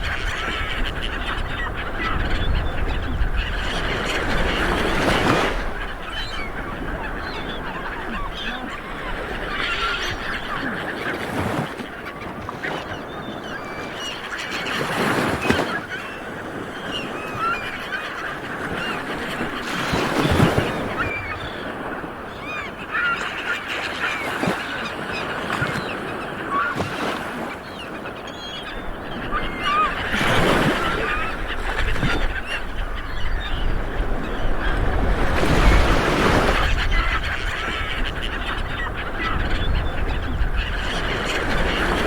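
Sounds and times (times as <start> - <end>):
waves washing onto beach: 0.0 - 42.0.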